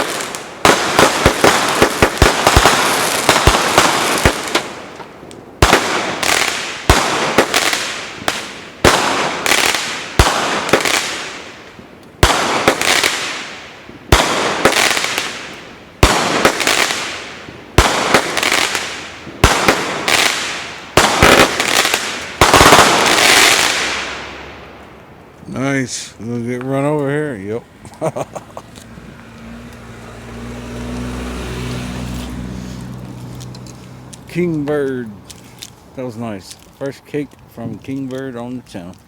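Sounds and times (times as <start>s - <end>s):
sharp firework reports: 0.0s - 11.6s, 12.2s - 24.8s
firework crackle: 0.0s - 25.2s
fireworks cracks: 0.0s - 39.0s.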